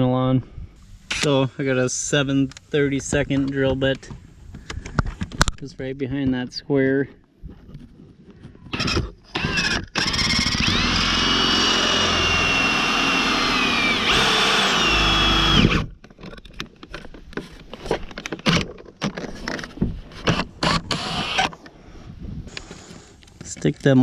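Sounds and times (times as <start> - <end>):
power drill whining: 8.7 - 15.9, 20.6 - 21.5.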